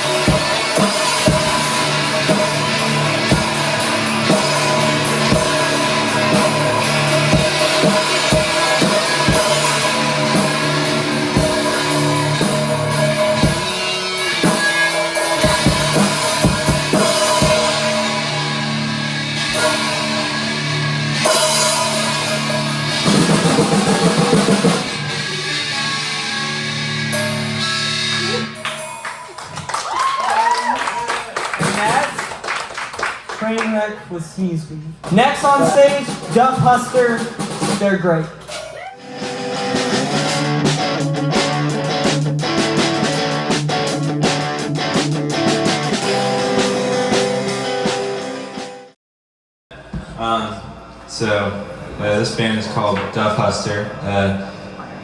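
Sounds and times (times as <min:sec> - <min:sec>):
drum kit hits: 0:00.0 - 0:25.6, 0:35.0 - 0:48.2
rock band playing: 0:00.0 - 0:30.0, 0:35.0 - 0:48.9.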